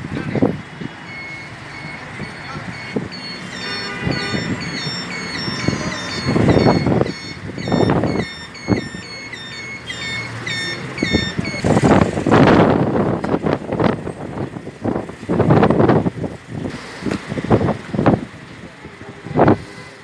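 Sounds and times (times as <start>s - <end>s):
traffic: 0.0s - 20.0s
short high chirping beeps: 1.1s - 11.8s
wind buffeting the microphone: 11.0s - 19.8s.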